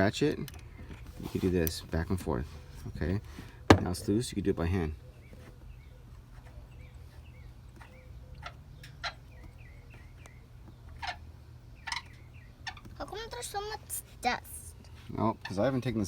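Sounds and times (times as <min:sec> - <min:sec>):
faint birds chirping: 0:00.6 - 0:16.0.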